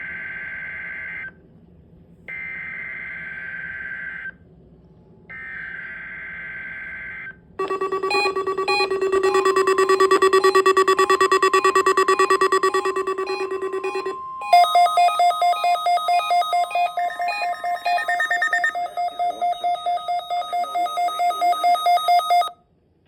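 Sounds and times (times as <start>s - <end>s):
pulsing electronic alert tone: 7.6s - 22.5s
screeching digital data tones: 7.6s - 22.5s.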